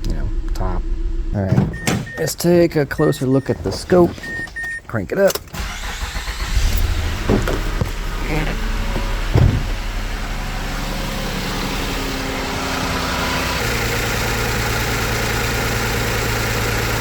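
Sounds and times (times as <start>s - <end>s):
car engine idling with misfire: 0.0s - 17.0s
short thump: 1.4s - 2.2s, 7.1s - 8.2s, 8.9s - 9.9s.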